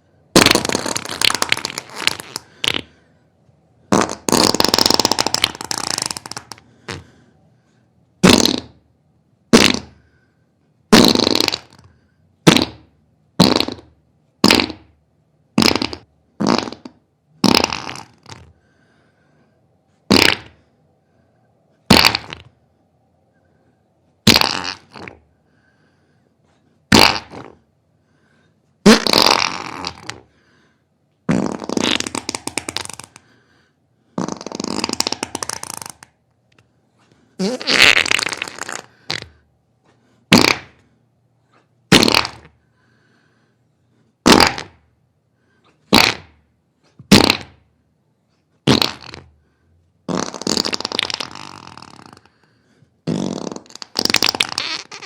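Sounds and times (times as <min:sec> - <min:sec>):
farts: 0:00.4 - 0:03.0, 0:03.9 - 0:07.1, 0:08.2 - 0:08.8, 0:09.5 - 0:10.1, 0:10.9 - 0:15.0, 0:15.6 - 0:18.6, 0:20.1 - 0:20.6, 0:21.9 - 0:22.6, 0:24.2 - 0:25.3, 0:26.9 - 0:27.6, 0:28.8 - 0:30.3, 0:31.3 - 0:33.2, 0:34.2 - 0:36.1, 0:37.4 - 0:39.4, 0:40.3 - 0:40.9, 0:41.5 - 0:42.6, 0:44.2 - 0:44.9, 0:45.8 - 0:46.4, 0:47.0 - 0:47.6, 0:48.6 - 0:49.4, 0:50.0 - 0:52.4, 0:53.0 - 0:55.0.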